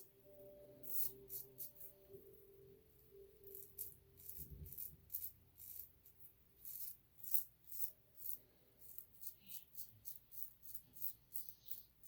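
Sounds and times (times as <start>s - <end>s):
straight razor scraping whiskers: 0.8s - 2.0s, 3.5s - 12.0s.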